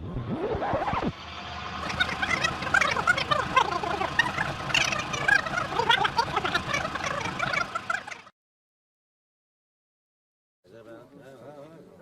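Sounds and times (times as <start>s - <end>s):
flock of birds squawking: 1.8s - 8.3s.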